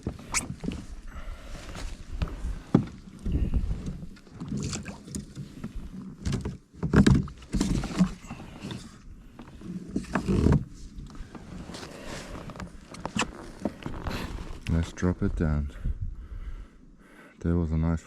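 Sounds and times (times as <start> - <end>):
water sloshing: 1.9 - 6.3.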